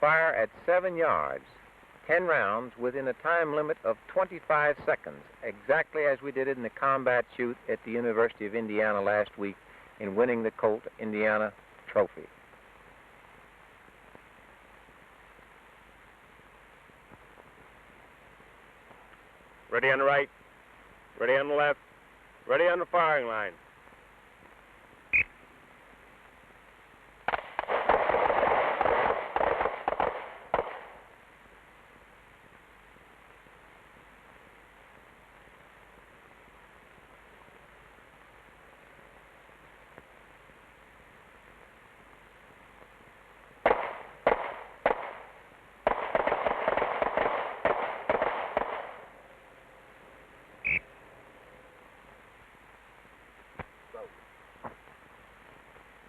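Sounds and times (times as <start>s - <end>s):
pistol shots: 27.3s - 31.0s, 43.6s - 49.1s.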